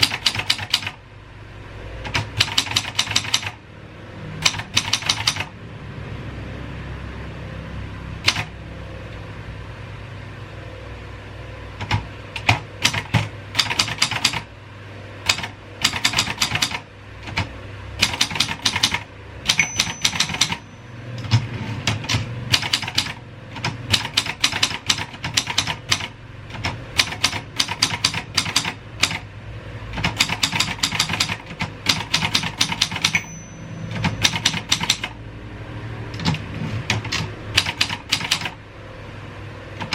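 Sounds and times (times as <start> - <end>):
typewriter key strikes: 0.0 - 1.0, 2.0 - 3.6, 4.4 - 5.5, 8.2 - 8.5, 11.8 - 14.4, 15.2 - 20.6, 21.2 - 29.2, 30.0 - 35.2, 36.2 - 38.6.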